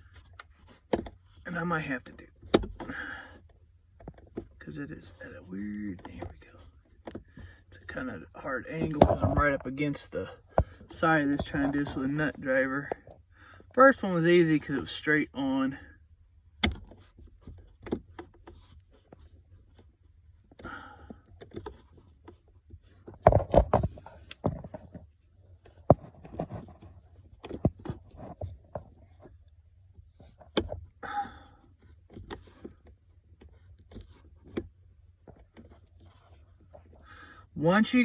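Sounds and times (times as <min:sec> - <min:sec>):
soft breaths: 0:06.2 - 0:07.9, 0:35.8 - 0:37.6.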